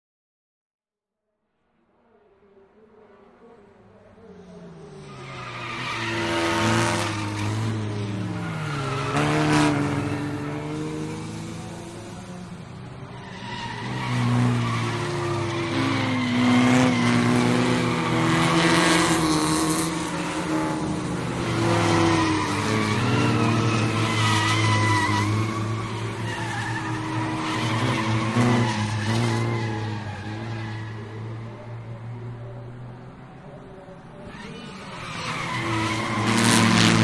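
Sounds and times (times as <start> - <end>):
race car engines revving: 2.8 - 37.0
tyres squealing: 34.2 - 37.0.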